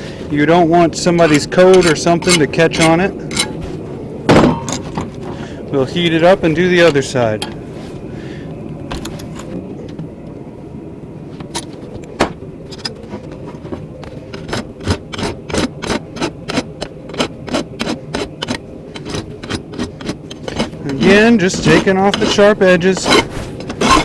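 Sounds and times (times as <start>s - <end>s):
rasp filing steel: 14.1s - 24.0s.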